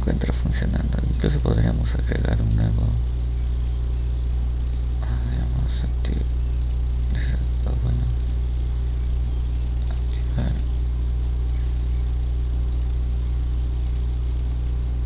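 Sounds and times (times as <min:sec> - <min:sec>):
high-pitched whine: 0:00.0 - 0:15.0
steady low hum: 0:00.0 - 0:15.0
faint murmurs: 0:05.0 - 0:06.4, 0:07.1 - 0:08.3, 0:09.0 - 0:10.8.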